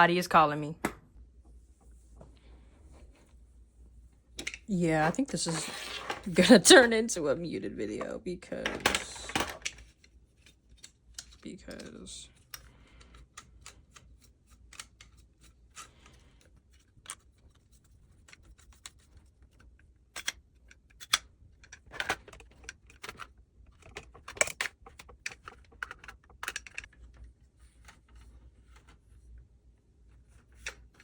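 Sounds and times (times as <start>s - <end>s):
small hard items clicking and rattling: 8.6s - 29.0s.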